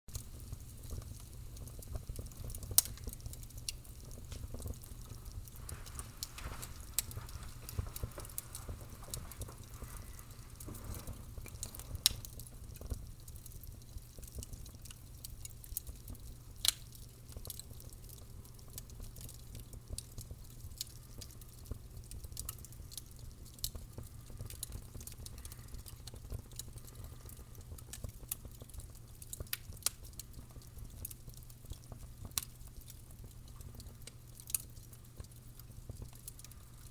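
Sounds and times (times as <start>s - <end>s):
fire crackling: 0.1s - 36.9s
low steady rumble: 3.7s - 12.8s.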